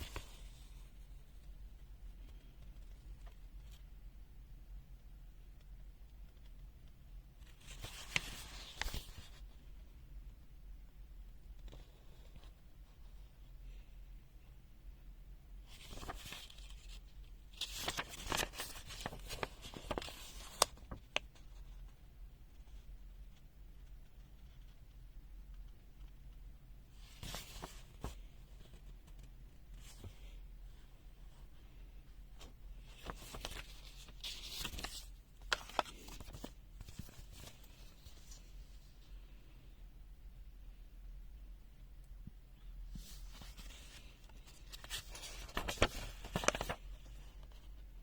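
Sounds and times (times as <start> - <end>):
handling rustle: 17.6 - 20.8, 43.0 - 46.8.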